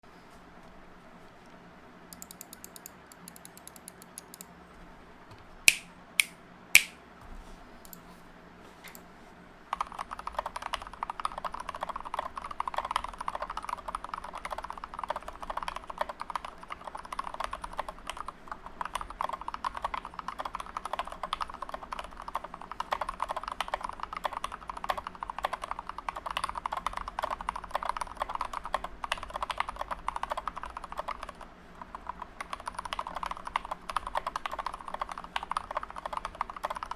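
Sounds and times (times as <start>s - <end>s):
loud sharp key clicks: 2.2s - 4.5s, 5.7s - 7.0s
mechanical keyboard typing: 2.2s - 4.5s, 5.7s - 7.0s, 9.8s - 36.9s.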